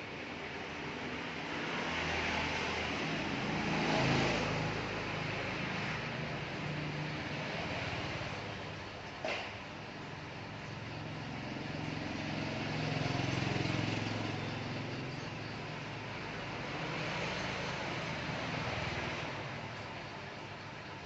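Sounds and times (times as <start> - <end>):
vehicle engine passing: 1.6 - 8.6, 10.8 - 19.8.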